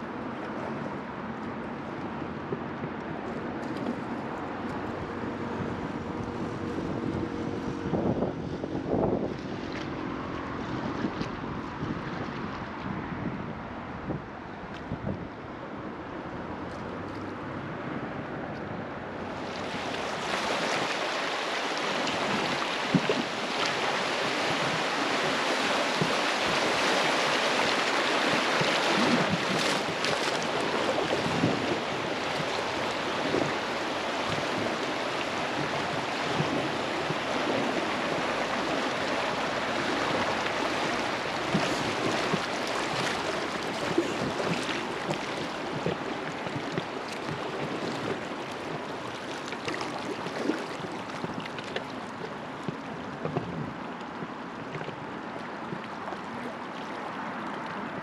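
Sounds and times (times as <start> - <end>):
rushing river water: 0.0 - 58.0
small water splashes: 19.2 - 58.0.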